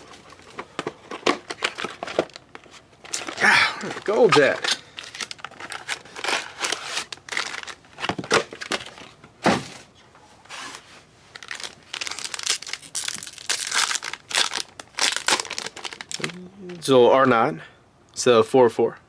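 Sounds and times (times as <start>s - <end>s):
packaging being torn and crinkled: 0.0s - 9.2s, 11.3s - 16.4s.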